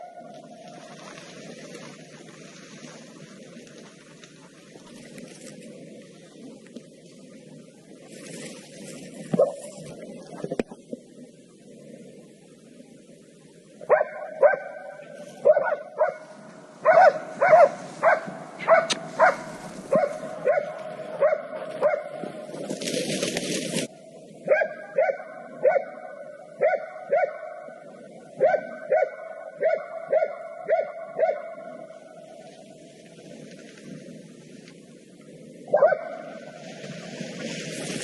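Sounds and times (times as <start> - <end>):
dog barking: 13.9 - 22.2, 24.4 - 27.7, 28.4 - 31.8, 35.7 - 36.4.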